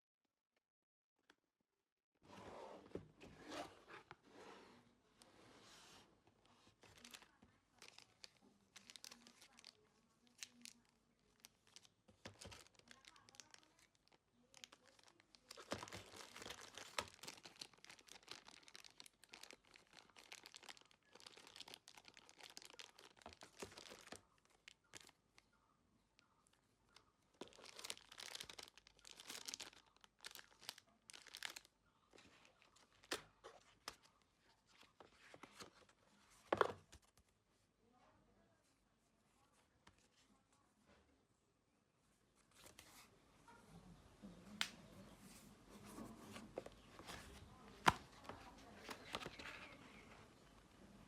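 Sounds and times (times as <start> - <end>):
packaging crinkling and tearing: 6.8 - 25.2, 27.4 - 34.1.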